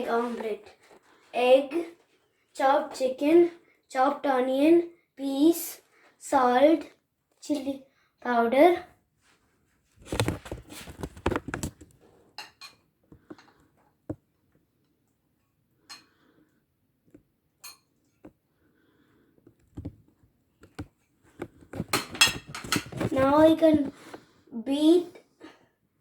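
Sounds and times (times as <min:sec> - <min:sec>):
bowls and spoon clinking: 0:12.4 - 0:13.5, 0:17.6 - 0:18.2.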